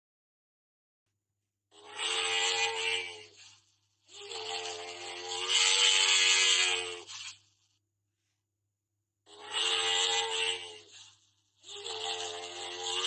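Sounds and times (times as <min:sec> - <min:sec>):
camel calling: 0:01.8 - 0:07.3, 0:09.3 - 0:13.0.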